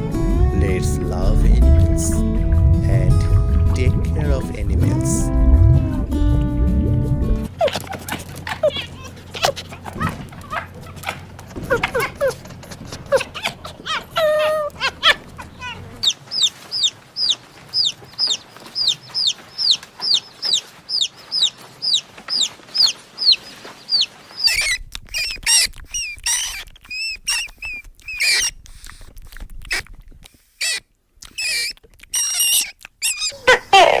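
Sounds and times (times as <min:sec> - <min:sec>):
chicks peeping: 0:00.0 - 0:07.5, 0:12.0 - 0:26.6
chicken calls: 0:00.0 - 0:28.5, 0:30.6 - 0:34.0.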